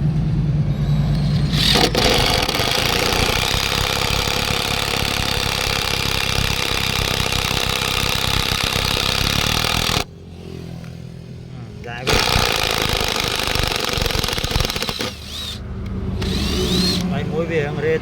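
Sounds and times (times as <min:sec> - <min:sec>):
low hum: 0:00.0 - 0:08.6
motor whirring: 0:00.7 - 0:11.0, 0:12.0 - 0:17.2.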